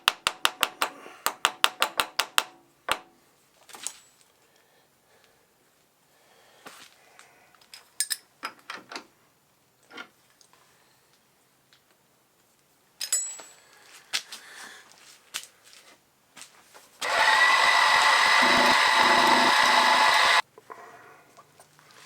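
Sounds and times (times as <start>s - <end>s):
power tool motor running: 17.0s - 20.4s.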